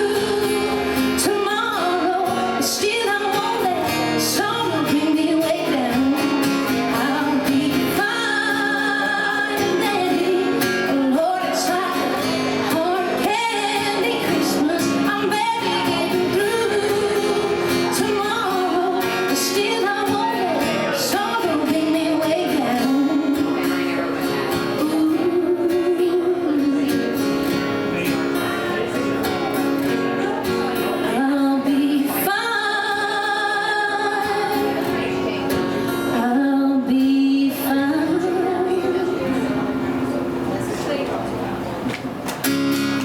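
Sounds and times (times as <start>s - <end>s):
person singing: 0.0s - 23.8s, 24.6s - 27.1s, 36.1s - 39.3s
guitar accompaniment: 0.0s - 43.0s.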